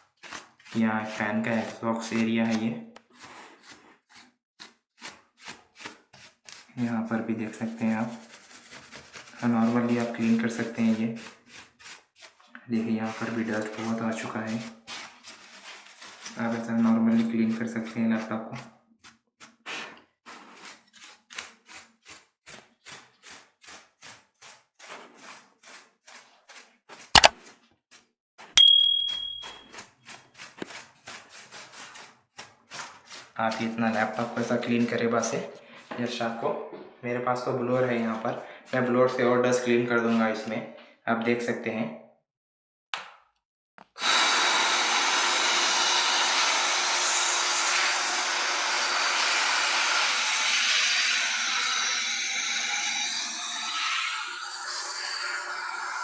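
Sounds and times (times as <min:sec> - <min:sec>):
brush scrubbing dust: 0:00.0 - 0:18.3, 0:19.0 - 0:28.0, 0:29.4 - 0:35.4
metallic ding ringing: 0:28.6 - 0:29.7.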